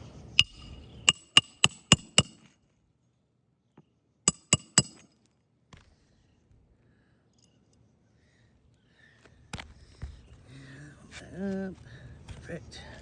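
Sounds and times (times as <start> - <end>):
hammer driving nails: 0.4 - 2.5, 4.3 - 5.1.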